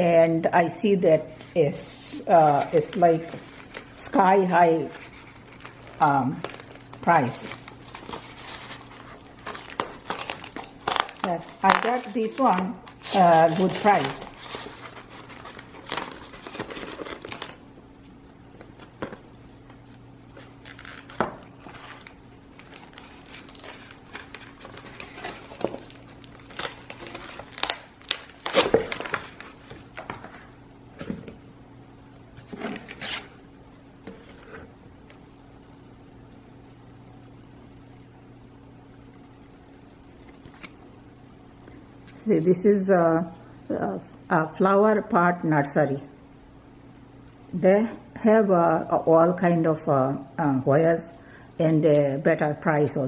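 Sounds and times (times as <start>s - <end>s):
faint steady hum: 0.0s - 53.0s
packaging crinkling and rustling: 2.2s - 31.4s, 32.3s - 35.2s, 40.1s - 40.9s.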